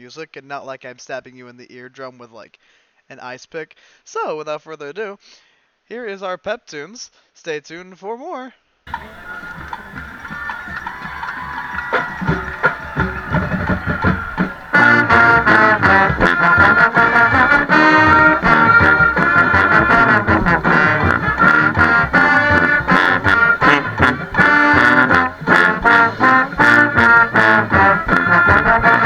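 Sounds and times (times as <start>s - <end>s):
brass band chords: 8.9s - 29.0s
steady drum beat: 8.9s - 29.0s.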